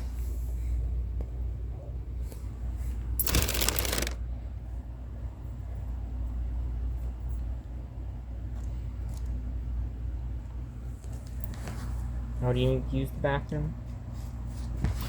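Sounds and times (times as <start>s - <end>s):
scratchy rustle: 3.2s - 4.2s.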